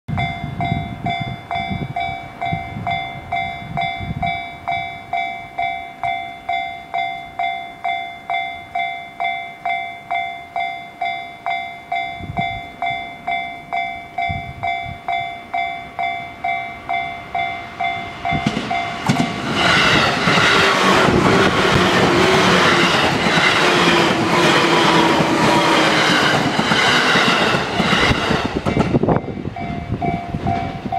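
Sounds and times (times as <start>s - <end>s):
level crossing warning bell: 0.1s - 19.4s, 28.6s - 30.9s
electric train passing: 0.1s - 30.9s
train wheels clattering over rails: 18.2s - 30.9s.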